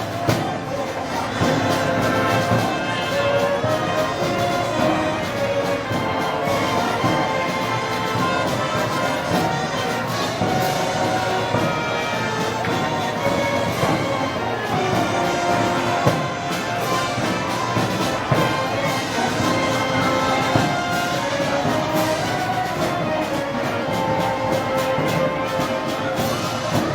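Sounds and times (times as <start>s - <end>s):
sharp percussion accents: 0.0s - 26.9s
wind band playing festival music: 0.0s - 26.9s.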